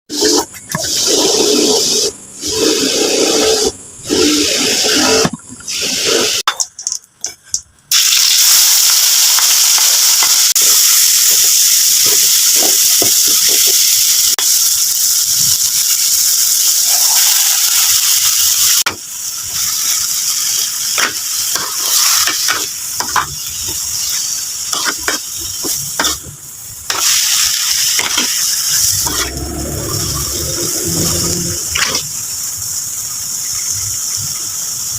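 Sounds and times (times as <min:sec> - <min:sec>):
food sizzling in a pan: 0:07.9 - 0:34.9
spatula scraping a pan: 0:28.0 - 0:32.1.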